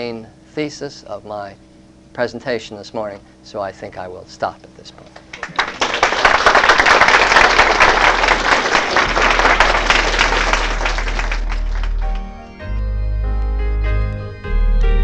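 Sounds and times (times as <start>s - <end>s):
audience applauding: 5.1s - 12.7s.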